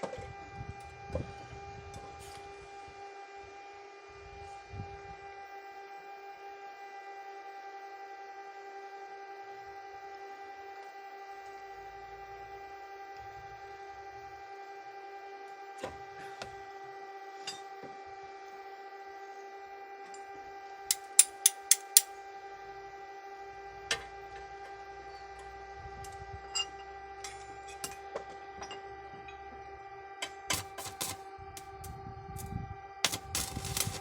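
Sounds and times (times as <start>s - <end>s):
steady pitched hum: 18.0s - 34.0s.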